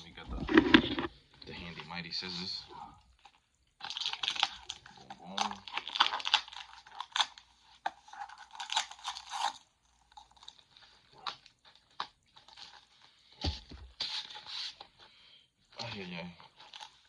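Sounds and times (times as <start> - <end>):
plastic packaging crinkling: 0.3 - 1.1, 3.2 - 13.2.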